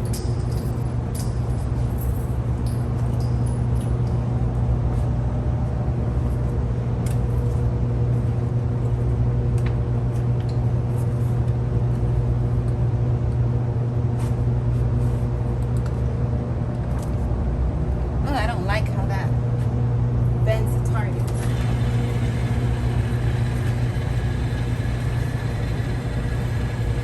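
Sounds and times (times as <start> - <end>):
low mechanical drone: 0.0 - 27.0.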